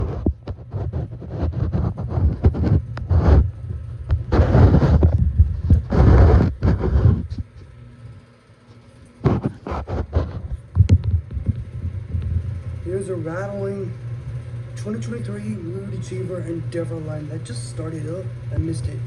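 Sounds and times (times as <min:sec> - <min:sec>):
heat pump fan airflow buffeting: 0:00.0 - 0:19.0
low rumble: 0:10.5 - 0:14.7.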